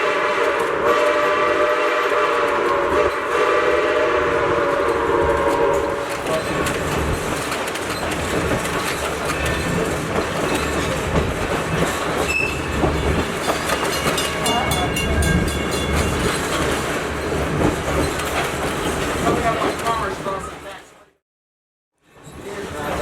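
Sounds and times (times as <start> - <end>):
train rumbling on rails: 0.0 - 21.2, 22.0 - 23.0
wheels clicking over rail joints: 5.5 - 20.5
high wheel squeals: 11.8 - 12.8.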